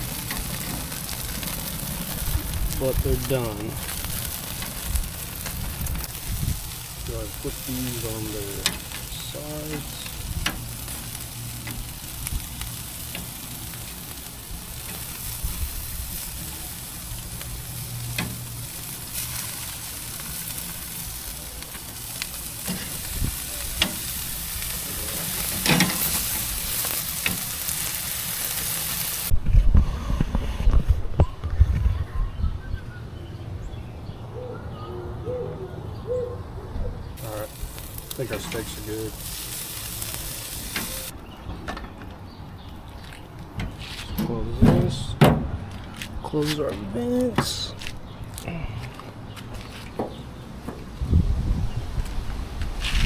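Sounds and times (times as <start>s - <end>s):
meat sizzling on a grill: 0.0s - 29.3s, 37.2s - 41.4s.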